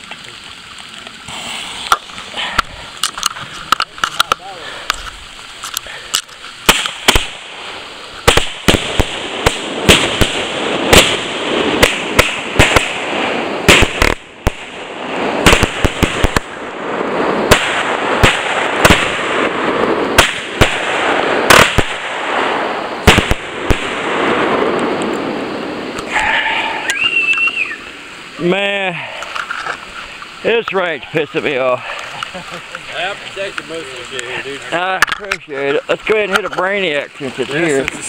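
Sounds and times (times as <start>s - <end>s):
steady hiss: 0.0s - 38.0s
fireworks sharp bangs: 1.2s - 5.1s, 5.9s - 29.2s.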